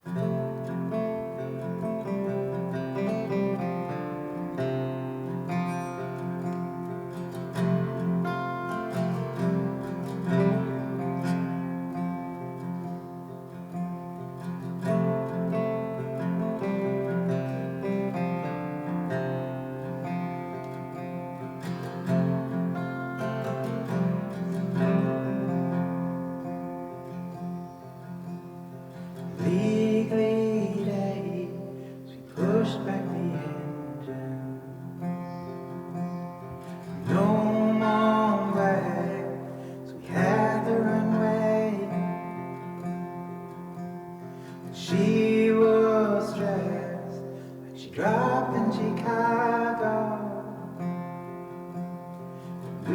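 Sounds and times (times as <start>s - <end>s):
acoustic guitar playing: 0.0s - 52.9s
wordless singing: 28.9s - 51.7s, 52.5s - 52.9s.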